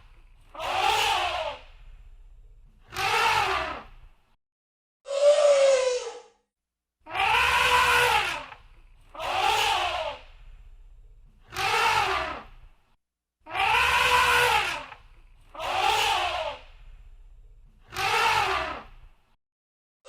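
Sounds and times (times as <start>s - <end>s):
low rumbling background: 1.6s - 2.8s, 10.2s - 11.5s, 16.6s - 17.8s
elephant trumpeting: 7.1s - 8.6s, 13.5s - 15.0s, 17.9s - 18.9s.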